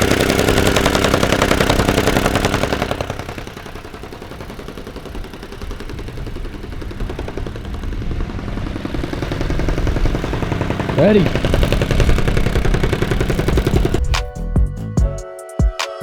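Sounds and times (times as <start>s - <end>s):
engine running with rapid pulse: 0.0s - 14.8s.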